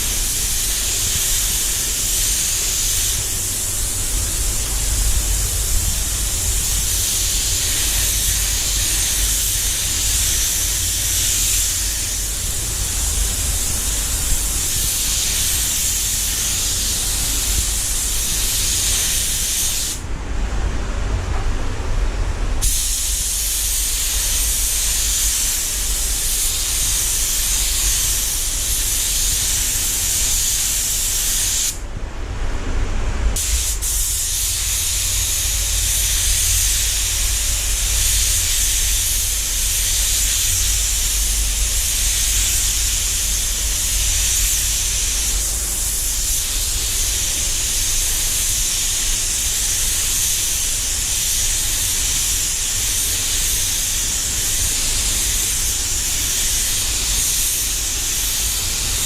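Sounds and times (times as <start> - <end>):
paint spray gun hissing: 0.0 - 20.0, 22.6 - 31.8, 33.4 - 59.0
low steady hum: 20.0 - 30.4, 31.8 - 48.0.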